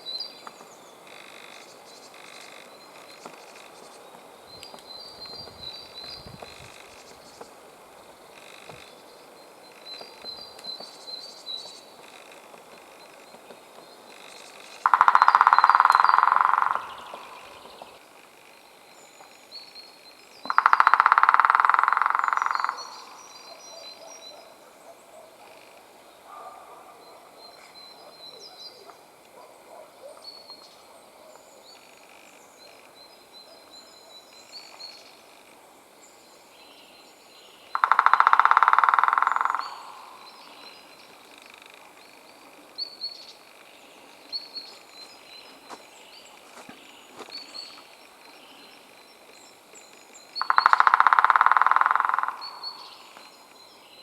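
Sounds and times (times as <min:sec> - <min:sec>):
woodpecker drumming on wood: 0:12.0 - 0:18.0, 0:20.4 - 0:23.3, 0:37.7 - 0:41.8, 0:50.4 - 0:53.2.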